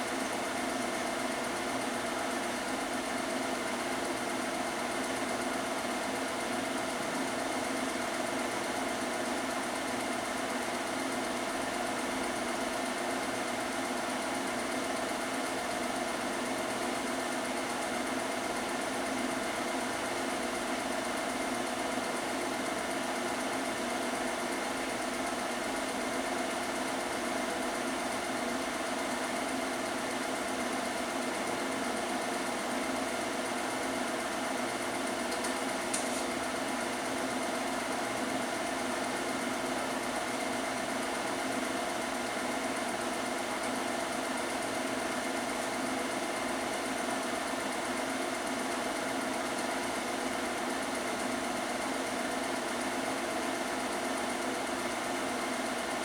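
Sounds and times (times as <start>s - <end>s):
film projector whirring: 0.0s - 56.0s.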